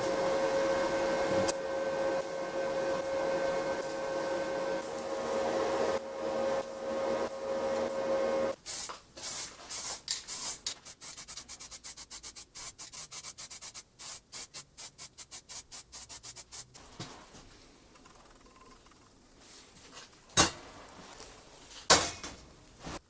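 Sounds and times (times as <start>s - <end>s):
motor whine: 0.0s - 8.6s
fast rhythmic rubbing strokes: 8.8s - 16.8s.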